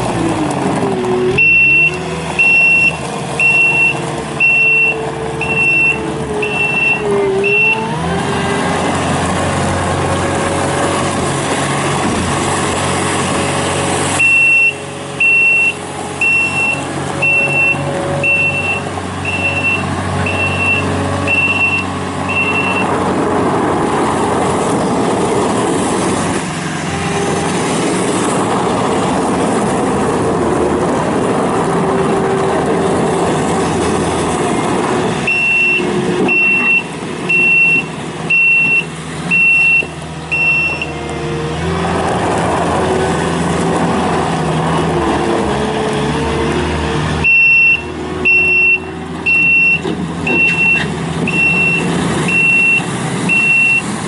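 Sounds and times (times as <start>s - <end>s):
loader diesel engine: 0.0s - 54.0s
backup alarm beeping: 1.4s - 7.8s, 14.2s - 22.9s, 35.3s - 40.9s, 47.2s - 53.9s.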